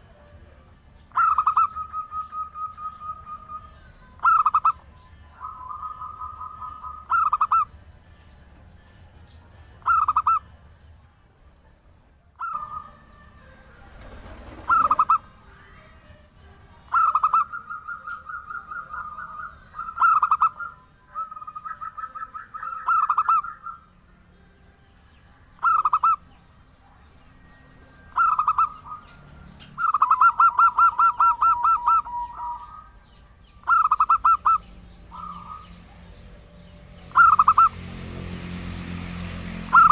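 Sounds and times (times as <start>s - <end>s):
dove cooing: 1.1s - 7.7s, 12.4s - 16.2s, 16.8s - 23.8s, 28.1s - 29.2s, 29.8s - 32.9s, 33.6s - 36.0s, 37.1s - 37.8s.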